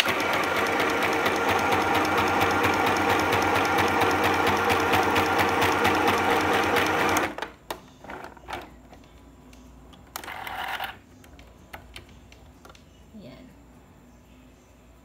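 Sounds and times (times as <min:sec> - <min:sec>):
sewing machine running: 0:00.0 - 0:07.4.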